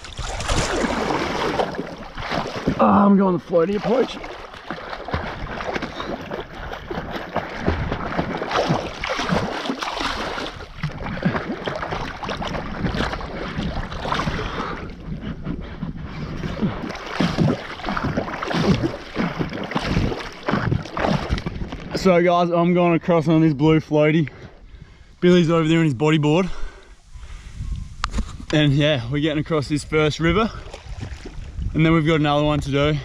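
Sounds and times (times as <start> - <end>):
water splashing from paddling: 0.0 - 22.2, 30.5 - 31.7.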